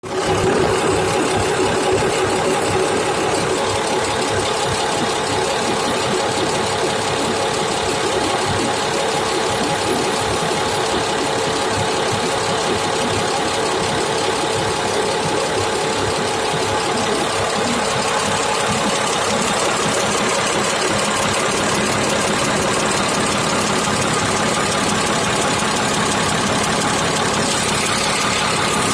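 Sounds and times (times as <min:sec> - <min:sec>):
diesel engine idling: 0:08.7 - 0:28.9.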